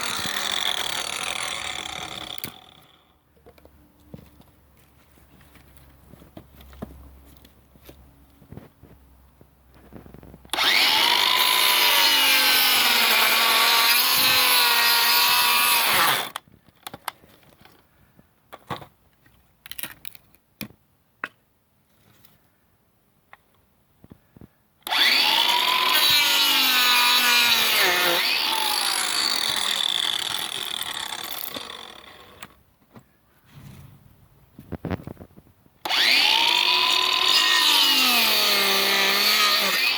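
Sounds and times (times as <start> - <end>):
angle grinder cutting branches: 0.0 - 3.1, 10.4 - 16.4, 24.8 - 32.6, 35.8 - 39.9.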